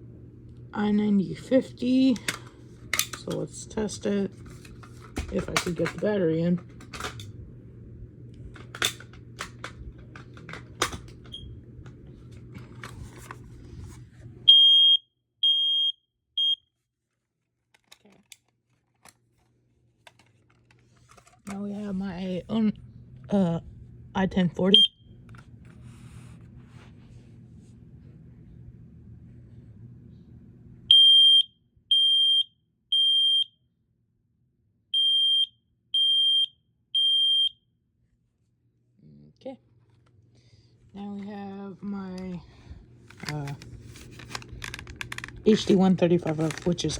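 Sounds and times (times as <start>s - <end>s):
faint smoke alarm chirp: 14.5s - 16.6s, 30.9s - 33.6s, 35.0s - 37.6s
smoke alarm beeping: 14.5s - 16.6s, 24.7s - 25.0s, 30.9s - 33.6s, 35.0s - 37.6s
faint low hum: 17.7s - 33.4s, 36.0s - 46.9s
plastic clicks and knocks: 17.8s - 19.2s, 43.1s - 46.7s.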